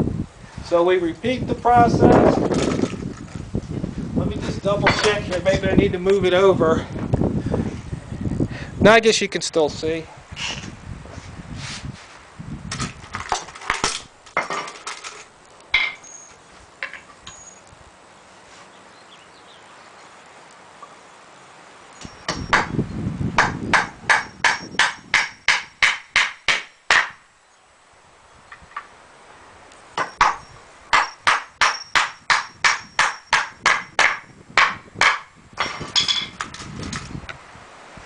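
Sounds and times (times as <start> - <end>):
hammer driving nails into wood: 23.4 - 27.2, 30.0 - 36.6.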